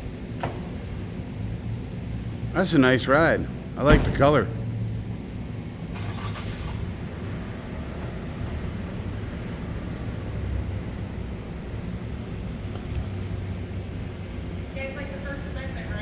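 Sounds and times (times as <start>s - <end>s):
street noise: 0.0s - 16.0s
car engine running: 5.2s - 16.0s.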